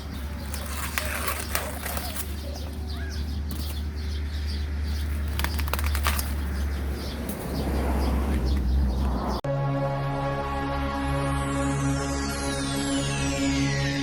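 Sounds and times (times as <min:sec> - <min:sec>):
birds calling: 0:00.0 - 0:09.4
electronic music: 0:09.4 - 0:14.0.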